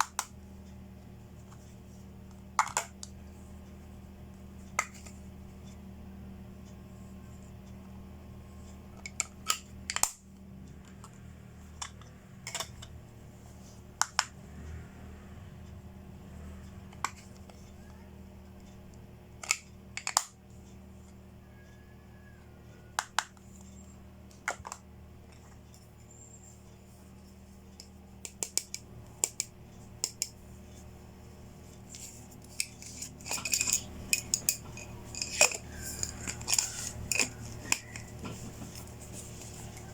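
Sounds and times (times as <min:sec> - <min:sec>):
plastic pieces clicking and tapping: 0:19.4 - 0:20.4, 0:27.8 - 0:30.4.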